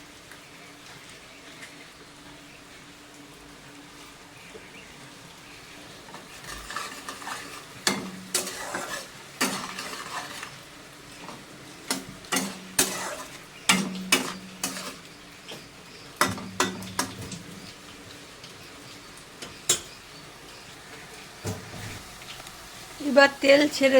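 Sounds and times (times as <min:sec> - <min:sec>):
food sizzling in pan: 0:00.0 - 0:23.9
spatula scraping a pan: 0:06.1 - 0:17.7.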